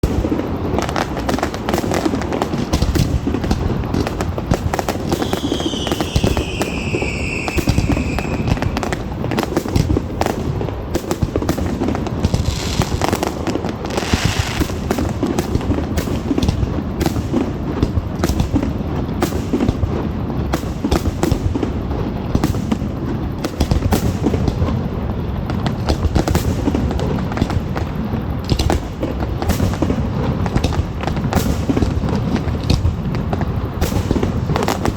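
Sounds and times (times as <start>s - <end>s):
firework hissing burst: 0.0s - 18.2s
falling firework whistle: 0.0s - 21.8s
fireworks booming and crackling: 0.0s - 34.9s.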